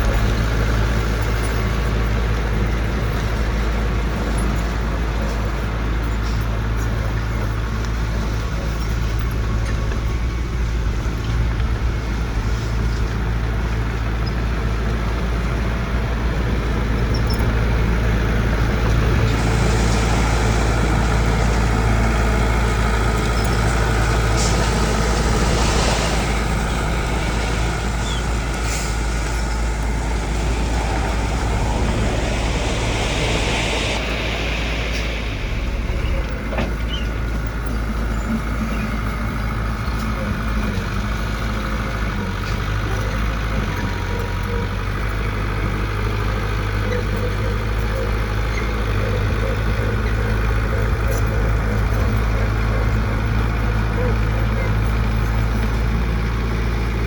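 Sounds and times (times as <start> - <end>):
diesel machinery engine droning: 0.0 - 57.0
hiss: 17.1 - 39.7.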